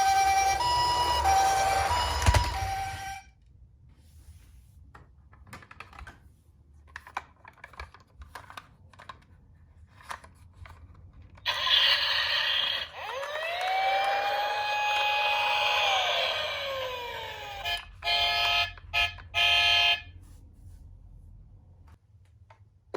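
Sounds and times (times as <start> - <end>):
toy electronic siren wail: 0.0 - 3.2, 11.5 - 20.0
plastic toy cars clicking: 5.2 - 17.9.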